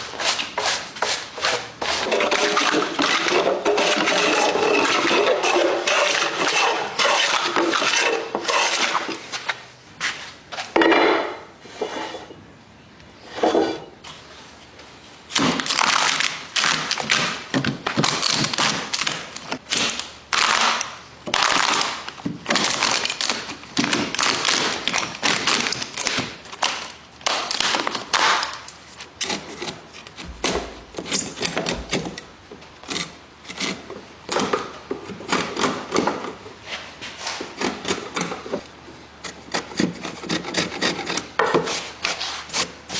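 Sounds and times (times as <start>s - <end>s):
wood scraping and rubbing: 0.2s - 9.6s, 13.2s - 14.0s.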